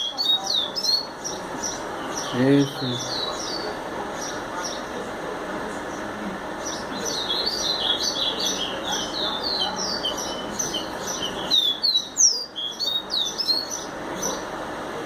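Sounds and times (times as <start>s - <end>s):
bird singing whistled notes: 0.0s - 3.6s, 6.7s - 14.4s.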